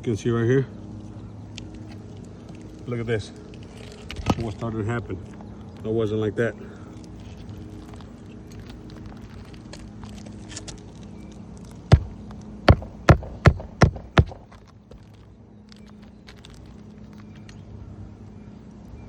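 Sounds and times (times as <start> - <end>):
hammer striking nail: 11.9 - 15.0.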